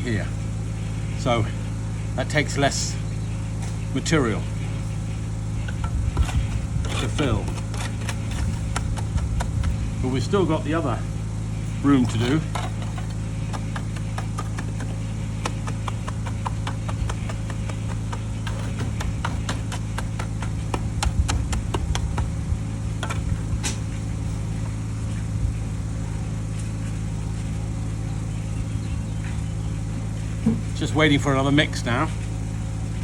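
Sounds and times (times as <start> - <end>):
concrete mixer humming: 0.0 - 33.0
sharp taps and knocks: 5.7 - 9.8, 12.1 - 22.4.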